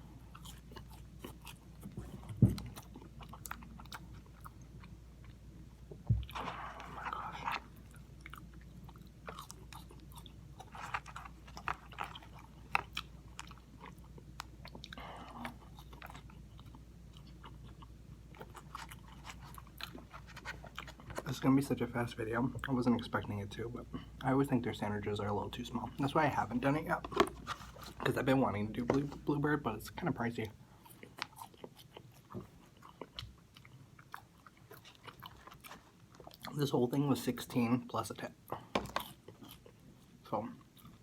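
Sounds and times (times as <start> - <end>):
wet chewing with mouth clicks: 0.1 - 21.3, 30.7 - 36.6.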